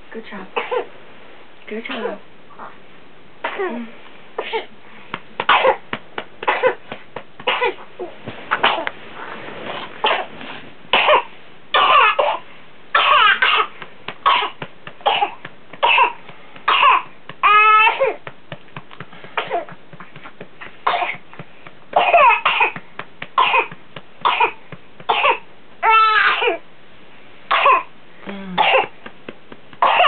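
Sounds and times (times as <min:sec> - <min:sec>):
harsh coughing: 0:05.5 - 0:05.8, 0:06.4 - 0:06.8, 0:10.9 - 0:17.1, 0:20.8 - 0:21.2, 0:22.0 - 0:22.8, 0:23.4 - 0:25.4, 0:27.5 - 0:27.9, 0:28.6 - 0:29.0, 0:29.8 - 0:30.0.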